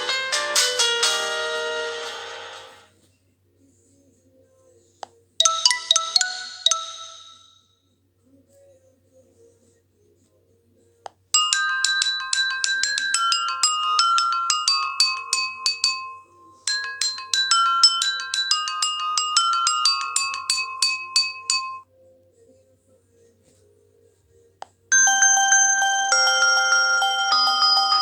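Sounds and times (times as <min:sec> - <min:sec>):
marimba-like phone ringtone: 0:05.4 - 0:07.6, 0:11.4 - 0:21.8, 0:24.9 - 0:28.0.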